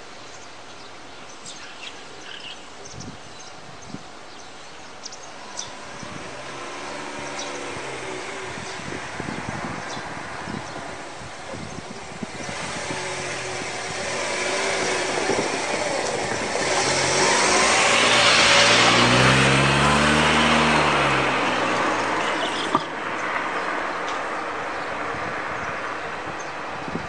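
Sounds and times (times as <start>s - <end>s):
vehicle passing by: 5.3s - 11.2s, 12.1s - 23.7s.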